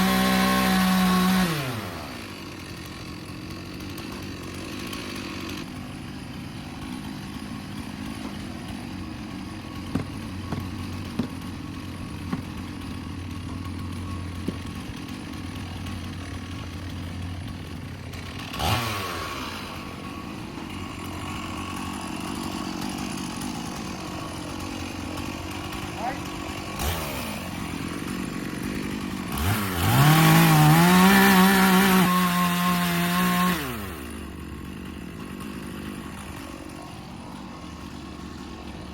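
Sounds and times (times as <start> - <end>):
chainsaw engine running: 0.0 - 38.9
sharp knocks: 9.8 - 11.4.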